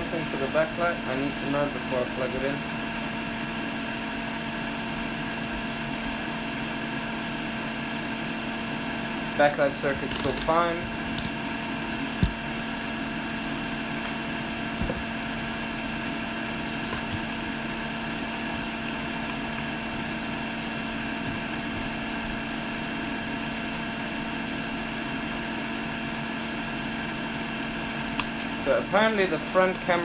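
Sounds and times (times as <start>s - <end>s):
fan motor humming: 0.0s - 23.4s.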